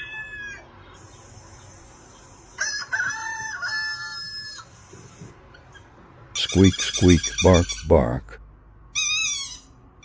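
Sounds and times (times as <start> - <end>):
rooster crowing: 0.0 - 0.7, 2.6 - 4.7.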